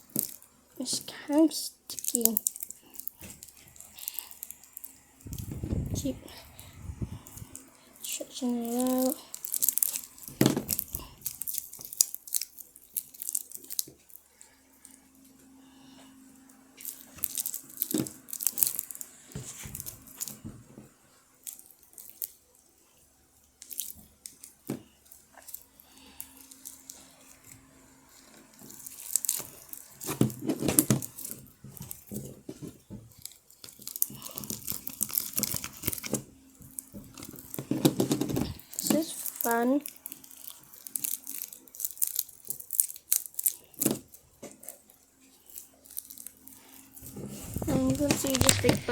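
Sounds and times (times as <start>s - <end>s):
slime squeezed with wet crackles: 1.9s - 6.0s, 7.4s - 14.2s, 16.8s - 19.2s, 23.6s - 24.7s, 28.6s - 32.1s, 33.2s - 37.6s, 38.4s - 47.0s.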